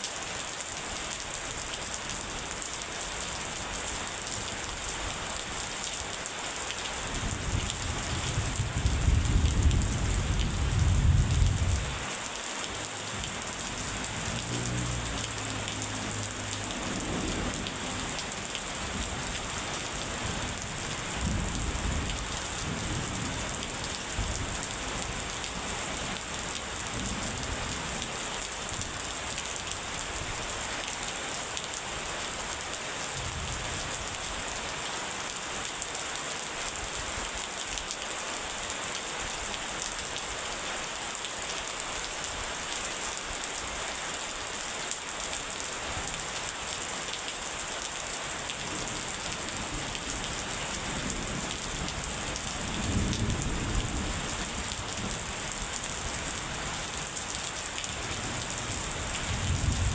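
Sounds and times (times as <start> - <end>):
steady rain: 0.0 - 59.9
thunder rumbling: 59.2 - 59.9.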